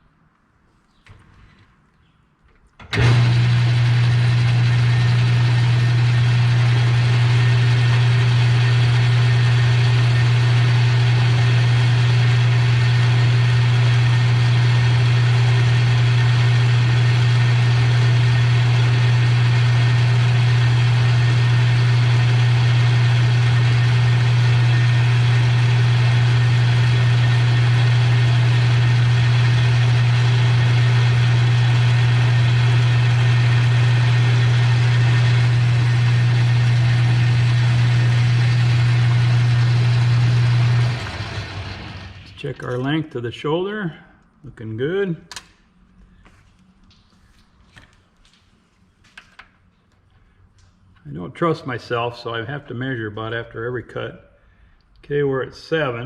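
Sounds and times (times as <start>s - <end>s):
metal lathe humming: 2.9s - 42.4s.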